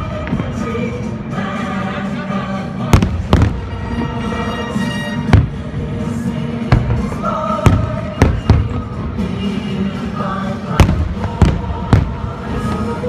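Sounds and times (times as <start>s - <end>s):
music soundtrack: 0.0s - 13.0s
fireworks bangs: 2.9s - 4.5s, 5.2s - 5.8s, 6.7s - 9.0s, 10.8s - 13.0s.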